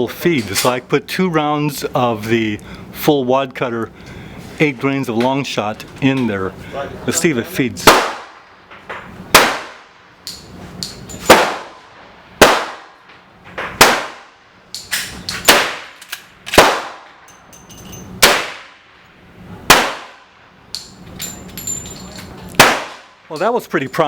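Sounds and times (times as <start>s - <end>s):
gunshots: 7.8s - 8.4s, 9.3s - 9.9s, 11.3s - 11.8s, 12.4s - 12.9s, 13.6s - 14.3s, 15.4s - 17.1s, 18.2s - 18.8s, 19.7s - 20.2s, 22.6s - 23.2s.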